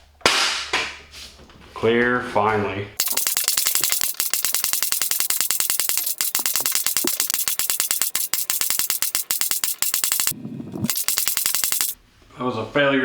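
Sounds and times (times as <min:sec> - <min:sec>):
music with fast rattling beat: 0:03.0 - 0:12.0.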